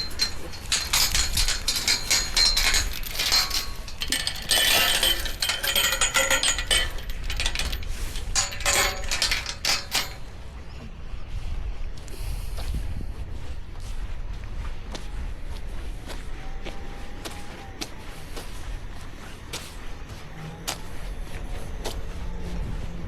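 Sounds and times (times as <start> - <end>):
metallic clinking and clanking: 0.0 - 10.3.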